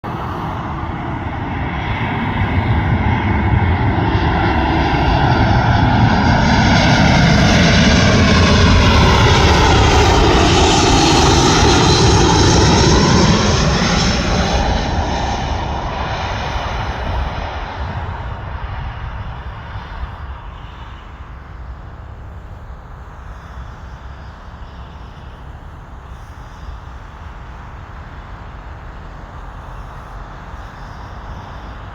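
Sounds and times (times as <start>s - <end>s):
jet airliner passing: 0.0s - 31.9s.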